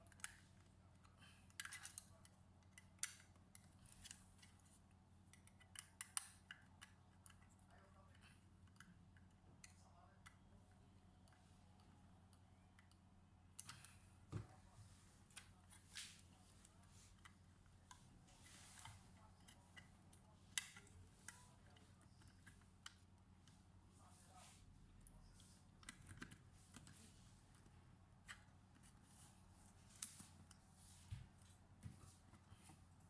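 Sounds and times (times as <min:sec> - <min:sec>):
small parts clicking and tapping: 0:00.0 - 0:10.5, 0:11.2 - 0:14.0, 0:18.7 - 0:23.6, 0:25.8 - 0:29.0
low electrical hum: 0:00.0 - 0:33.0.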